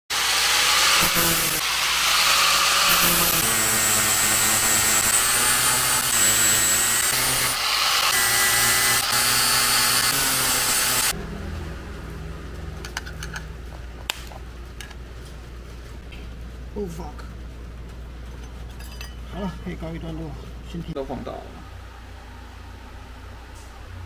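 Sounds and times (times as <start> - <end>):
power tool grinding metal: 0.1 - 11.2.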